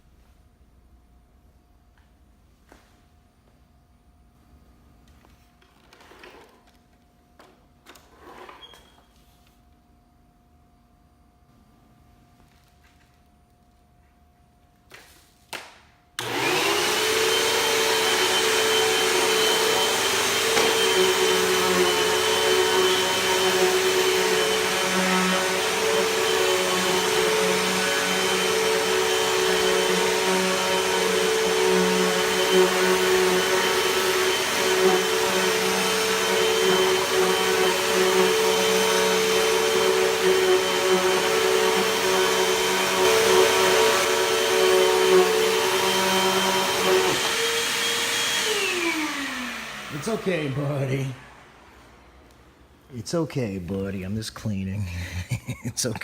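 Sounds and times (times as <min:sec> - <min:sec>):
vacuum cleaner motor whine: 0:16.2 - 0:52.5.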